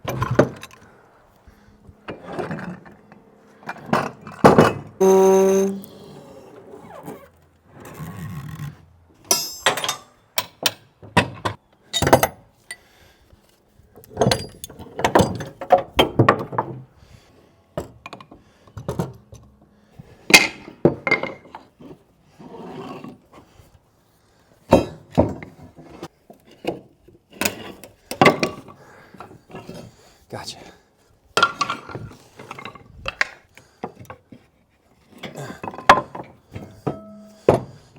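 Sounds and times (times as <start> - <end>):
metal clinking: 9.3 - 10.0.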